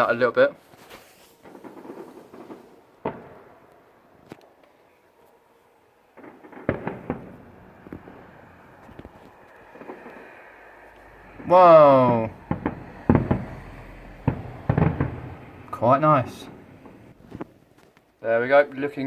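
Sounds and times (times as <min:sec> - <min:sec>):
small fireworks pops: 0:00.7 - 0:04.8, 0:06.1 - 0:18.1
fireworks bangs: 0:01.0 - 0:04.6, 0:06.0 - 0:17.6.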